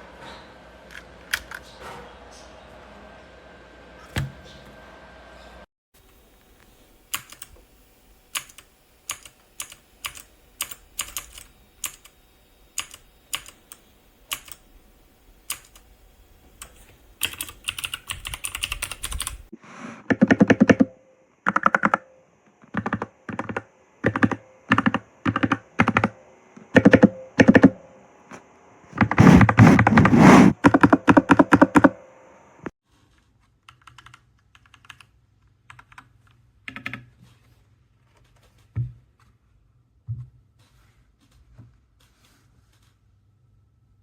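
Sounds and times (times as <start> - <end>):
mechanical keyboard typing: 8.4 - 12.1, 12.8 - 13.6, 14.3 - 14.6, 15.5 - 15.8, 16.6 - 19.5, 21.5 - 22.0, 22.6 - 26.2, 29.0 - 32.0, 33.7 - 35.1, 35.7 - 36.1.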